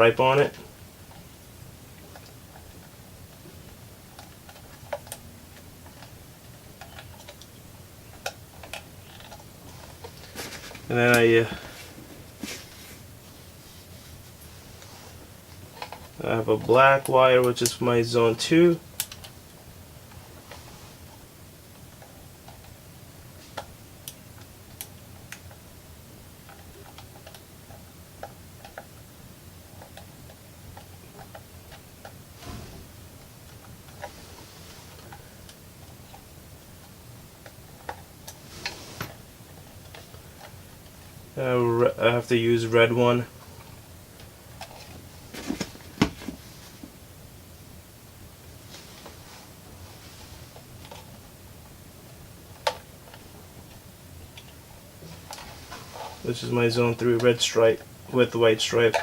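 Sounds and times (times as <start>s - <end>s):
low steady hum: 0.0s - 59.0s.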